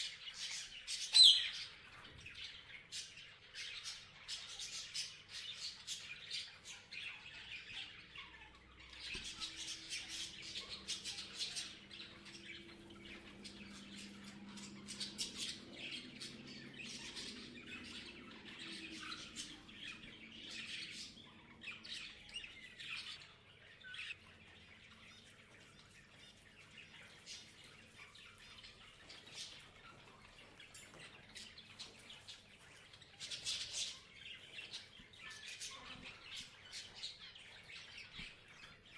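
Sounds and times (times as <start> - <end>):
parrots chirping and squawking: 3.5 - 38.8.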